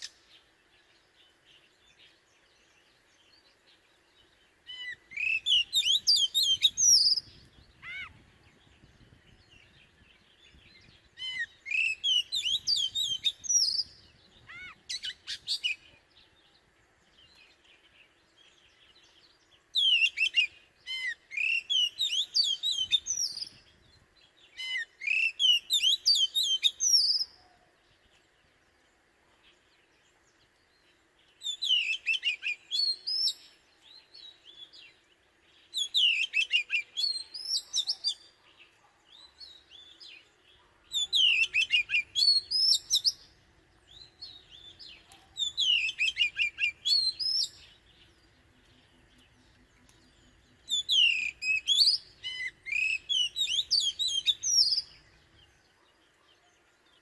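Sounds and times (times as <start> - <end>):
bird singing whistled phrases: 4.7 - 8.1, 11.2 - 15.8, 19.8 - 23.5, 24.6 - 27.5, 31.4 - 34.7, 35.7 - 38.3, 40.9 - 43.3, 43.9 - 47.8, 50.7 - 55.1.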